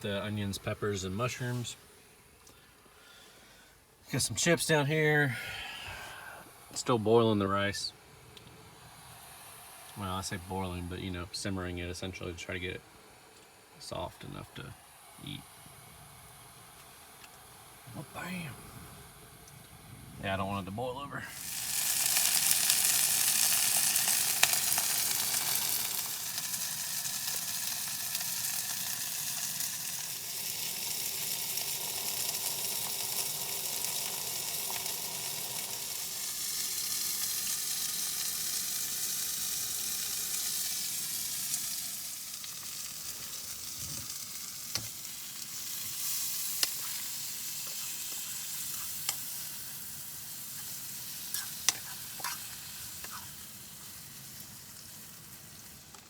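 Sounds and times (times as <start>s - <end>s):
vegetables sizzling in a frying pan: 21.3s - 56.0s.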